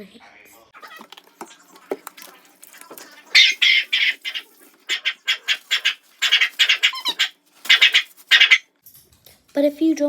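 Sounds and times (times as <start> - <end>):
dog squeaky cries: 3.3 - 8.6.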